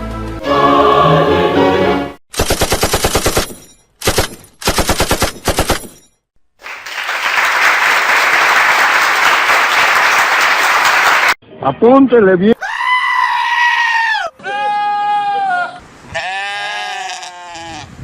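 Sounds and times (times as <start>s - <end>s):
machine-gun bursts: 2.3s - 5.9s.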